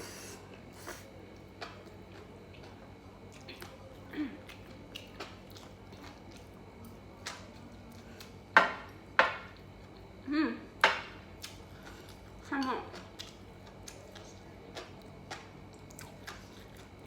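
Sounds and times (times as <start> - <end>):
person chewing: 0.0 - 8.4, 11.4 - 17.0.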